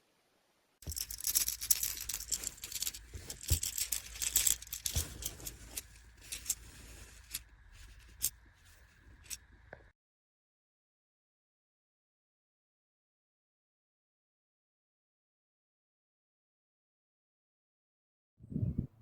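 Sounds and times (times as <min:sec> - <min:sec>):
rustling and crinkling handling: 0:00.8 - 0:09.4.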